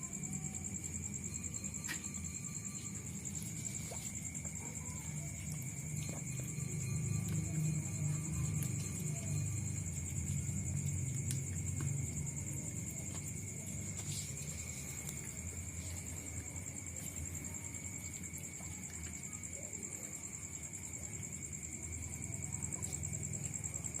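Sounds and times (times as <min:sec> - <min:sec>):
high-pitched insect chirring: 0:00.0 - 0:12.1.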